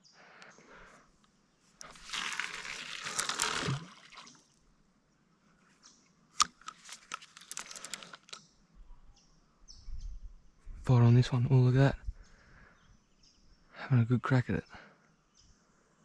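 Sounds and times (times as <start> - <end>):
rustling crinkling noise: 1.6 - 4.4, 6.4 - 8.4.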